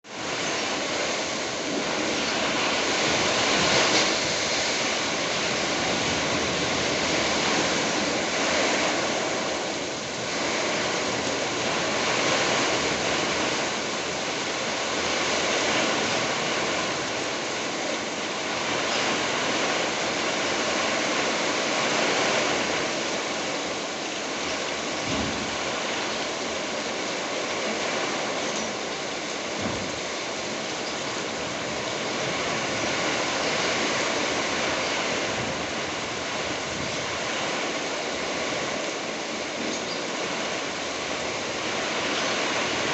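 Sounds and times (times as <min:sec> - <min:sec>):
heavy rain: 0:00.0 - 0:42.9
strong wind: 0:00.0 - 0:42.9.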